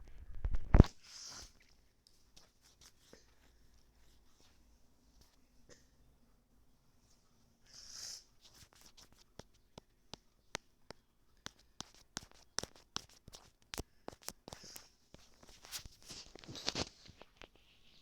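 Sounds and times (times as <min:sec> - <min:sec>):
soft rustles: 0:00.0 - 0:05.6, 0:11.4 - 0:18.0
faint irregular clicks and taps: 0:08.4 - 0:17.8.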